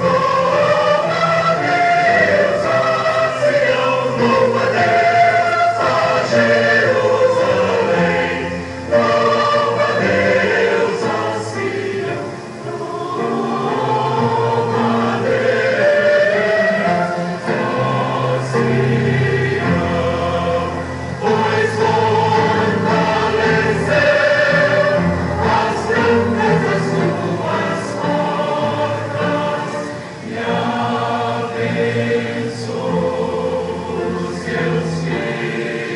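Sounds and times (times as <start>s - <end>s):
choir singing a hymn: 0.0s - 35.9s.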